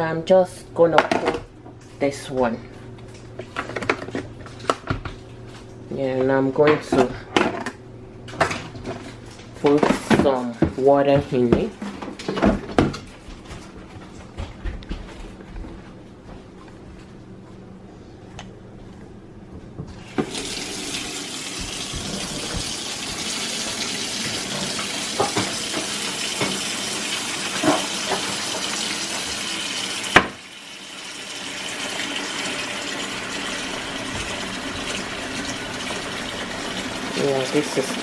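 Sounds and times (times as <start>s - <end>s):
tap water filling a basin: 20.0s - 38.0s.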